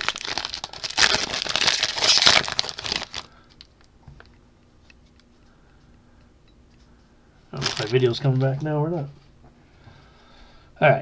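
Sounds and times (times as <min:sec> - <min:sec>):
foil wrapper crinkling and tearing: 0:00.0 - 0:03.8, 0:07.6 - 0:08.6.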